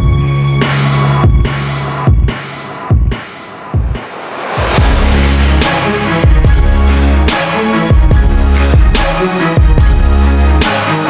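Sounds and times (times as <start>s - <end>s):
electronic background music: 0.0s - 11.0s
heavy bass drum hits: 3.8s - 9.2s.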